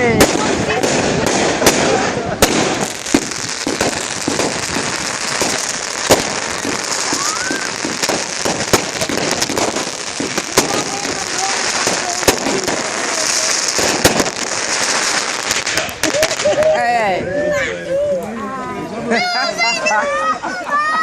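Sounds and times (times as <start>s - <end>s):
fireworks bangs: 0.0s - 17.1s
fireworks crackling and popping: 0.0s - 17.1s
rising firework whistle: 2.7s - 16.7s.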